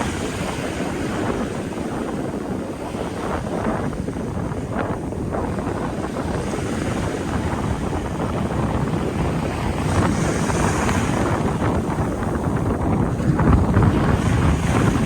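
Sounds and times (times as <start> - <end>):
sea waves washing in: 0.0 - 15.0
wind buffeting microphone: 0.0 - 15.0.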